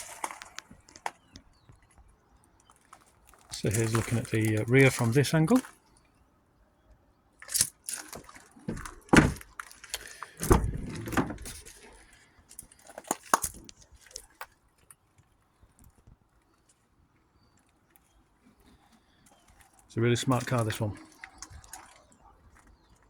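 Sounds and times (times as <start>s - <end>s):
clicks rattles and knocks: 7.4s - 14.4s.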